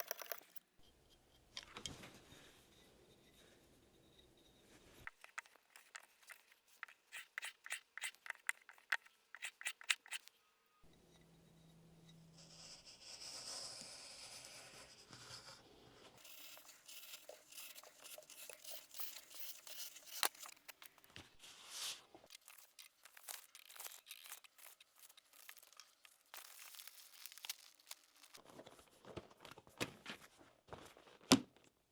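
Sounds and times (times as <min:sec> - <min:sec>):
chisel scraping wood: 0:05.1 - 0:10.3, 0:16.2 - 0:21.0.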